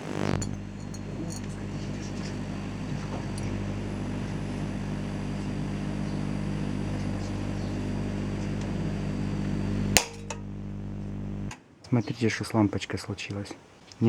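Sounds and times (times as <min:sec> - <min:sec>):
steady mains hum: 0:00.0 - 0:11.6.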